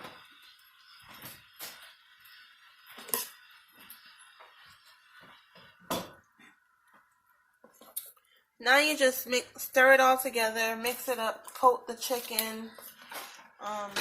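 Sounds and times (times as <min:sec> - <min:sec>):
dishes and utensils clinking: 0:02.8 - 0:04.8.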